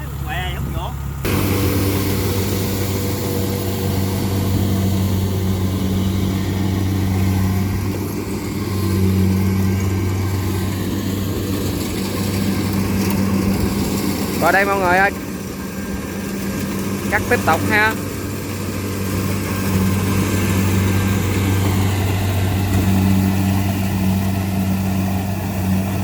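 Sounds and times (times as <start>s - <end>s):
combine harvester diesel engine: 0.0s - 26.0s.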